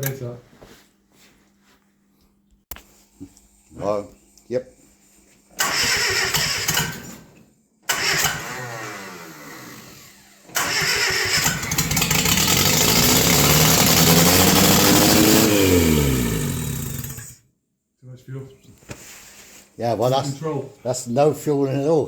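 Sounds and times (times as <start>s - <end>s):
petrol engine starting and racing: 5.6s - 7.1s, 7.9s - 17.4s.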